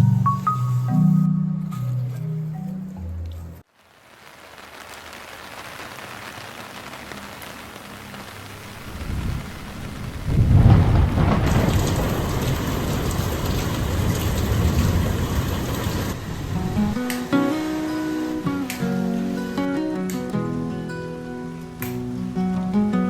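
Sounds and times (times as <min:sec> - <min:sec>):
steady rain: 0:03.6 - 0:23.0
rolling thunder: 0:08.5 - 0:17.0.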